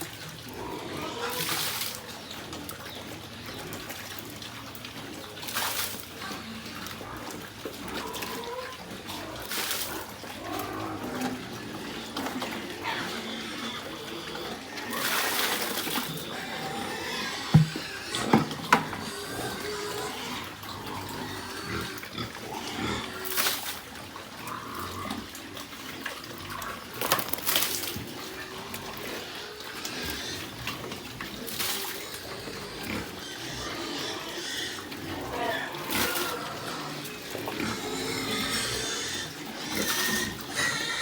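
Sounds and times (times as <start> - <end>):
pigs calling: 0.0 - 41.0
sharp knocks: 17.6 - 18.8.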